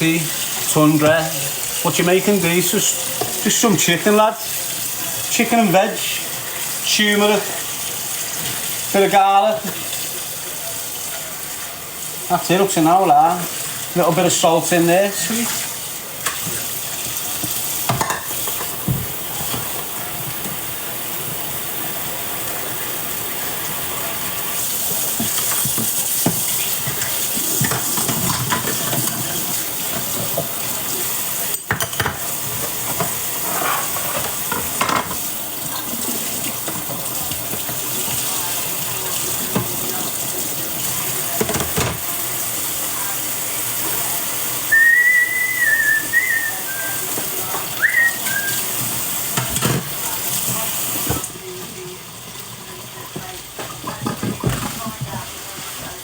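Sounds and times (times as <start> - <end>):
food sizzling in a frying pan: 0.0 - 56.0
utensil scraping a pan: 32.9 - 35.2
short high whistle: 44.7 - 47.1, 47.8 - 48.7.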